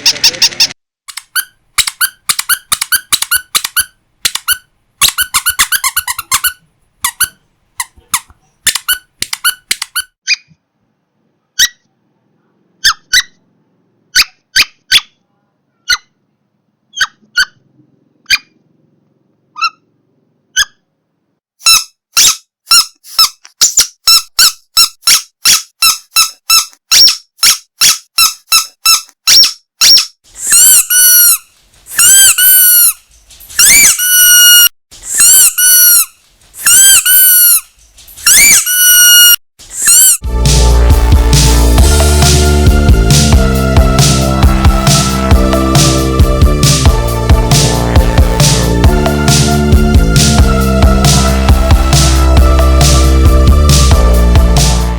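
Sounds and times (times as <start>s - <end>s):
squeaky pet toy squeaking: 0.0s - 10.6s, 11.6s - 11.9s, 12.8s - 13.4s, 14.1s - 15.2s, 15.8s - 16.2s, 16.9s - 17.6s, 18.2s - 18.6s, 19.6s - 19.8s, 20.5s - 20.9s, 21.6s - 40.3s.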